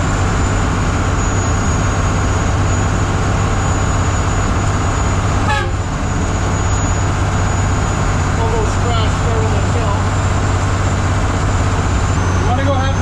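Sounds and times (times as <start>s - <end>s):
vehicle engine and road drone: 0.0s - 13.0s
short falling squeal: 1.0s - 8.3s, 12.1s - 13.0s.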